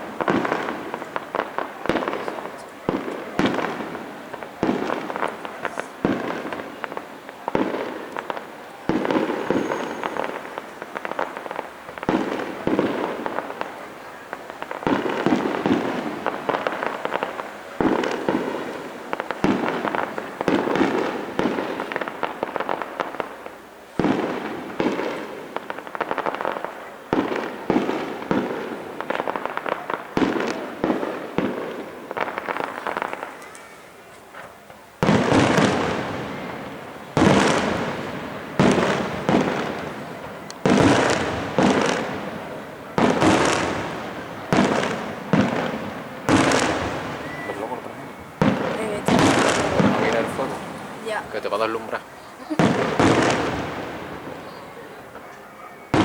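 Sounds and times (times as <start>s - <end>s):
fireworks bangs and crackling: 0.0s - 56.0s.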